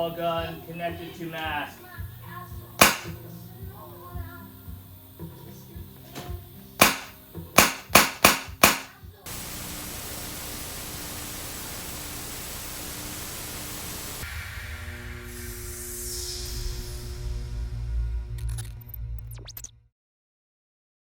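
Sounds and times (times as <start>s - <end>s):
steady hiss: 0.0s - 17.2s
paintball gun pops: 2.8s - 3.2s, 6.2s - 8.9s.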